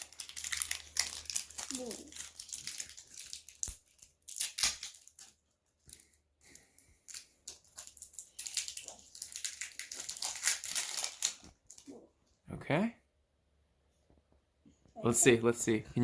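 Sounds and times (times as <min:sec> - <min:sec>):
packaging being torn and crinkled: 0:00.0 - 0:11.9.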